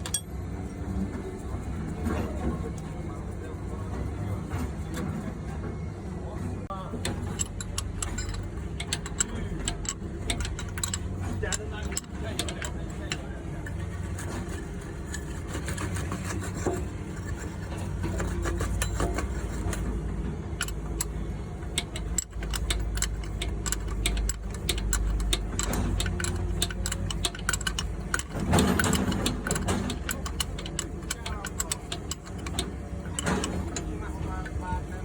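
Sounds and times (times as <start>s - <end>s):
sharp ticks and clicks: 21.8s - 33.9s.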